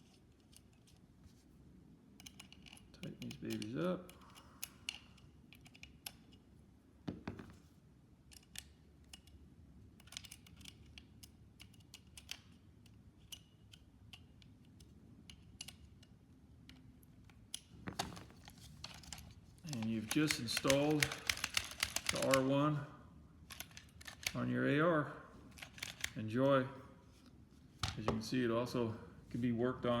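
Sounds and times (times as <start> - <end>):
small metal clicks and taps: 10.0 - 17.8.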